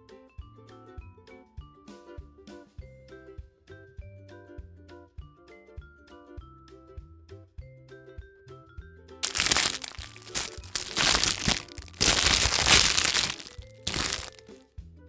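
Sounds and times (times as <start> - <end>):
wrapper crinkling and tearing: 9.2 - 14.5.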